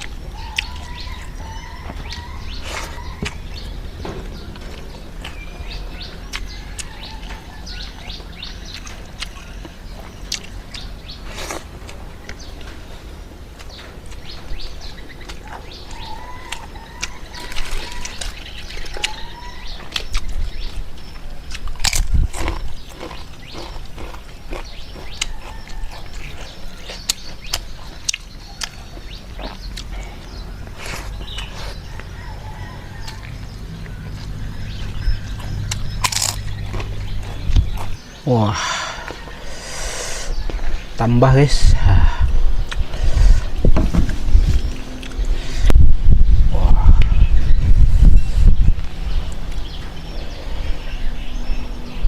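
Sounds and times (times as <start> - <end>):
person chewing: 0.0 - 12.8, 15.2 - 32.2, 33.0 - 38.0, 42.3 - 43.7
birds chirping: 0.0 - 52.0
steady low hum: 20.2 - 52.0
lip-smacking: 42.2 - 43.7
sharp mouth clicks: 42.6 - 43.5.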